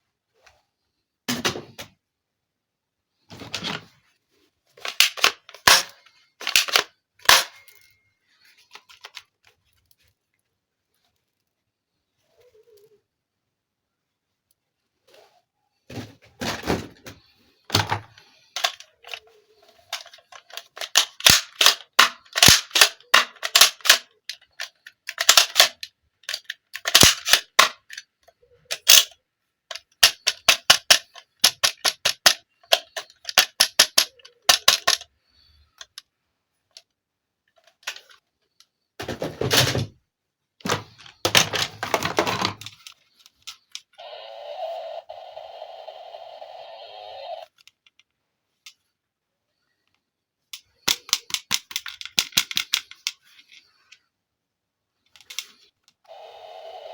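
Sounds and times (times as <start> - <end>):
plastic toys clicking: 4.8 - 8.0, 8.6 - 9.4, 17.7 - 36.1, 36.7 - 38.7, 40.6 - 44.0, 50.5 - 54.0, 55.1 - 56.1.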